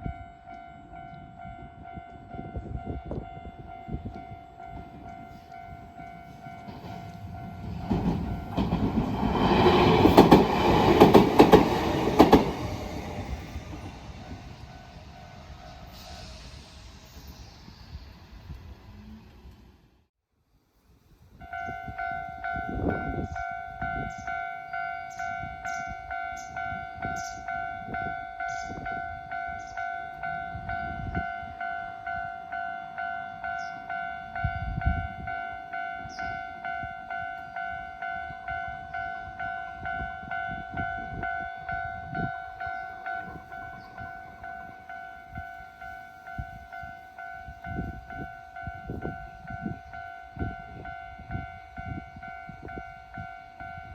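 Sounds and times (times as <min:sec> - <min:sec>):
level-crossing alarm dinging: 0:00.2 - 0:09.2, 0:36.0 - 0:53.9.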